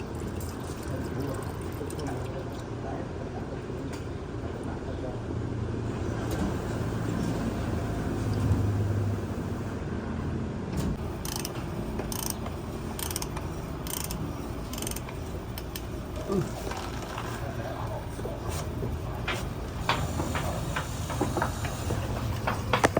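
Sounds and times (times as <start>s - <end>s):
ratchet wrench clicking: 11.2s - 12.4s, 13.0s - 15.8s.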